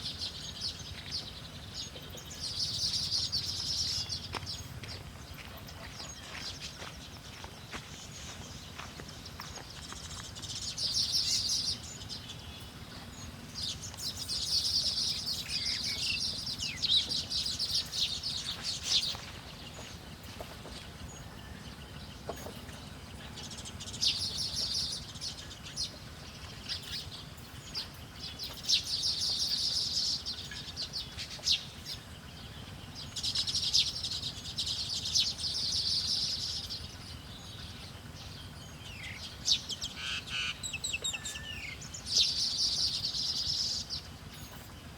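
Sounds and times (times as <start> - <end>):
songbirds chattering: 0.0 - 44.9.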